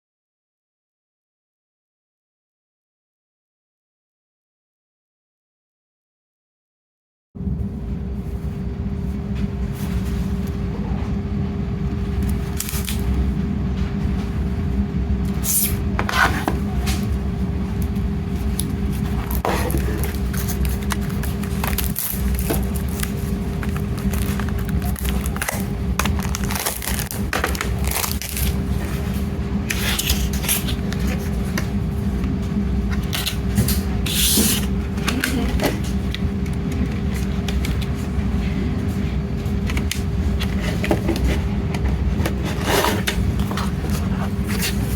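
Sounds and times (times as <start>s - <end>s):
room hum: 7.4s - 44.9s
plastic and card rustling: 12.1s - 13.2s, 17.8s - 38.4s, 39.4s - 44.9s.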